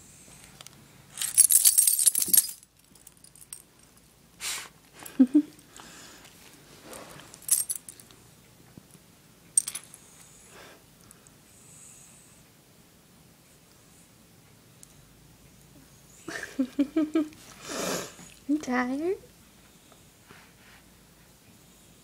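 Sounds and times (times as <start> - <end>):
dog collar tags jingling: 1.2 - 4.0, 7.3 - 8.1, 9.6 - 9.9.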